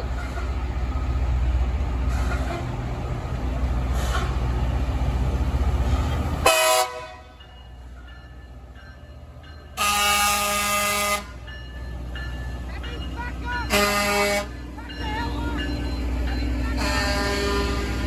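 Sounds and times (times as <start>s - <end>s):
rail grinder train rumbling: 0.0s - 18.0s
train horn: 6.4s - 7.3s, 9.8s - 11.4s, 13.7s - 14.5s, 16.8s - 18.0s.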